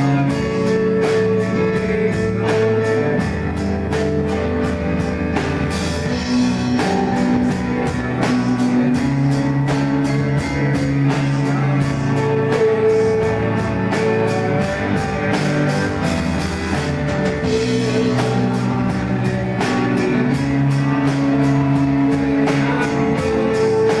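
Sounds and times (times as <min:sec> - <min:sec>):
rock music with guitar and drums: 0:00.0 - 0:24.0.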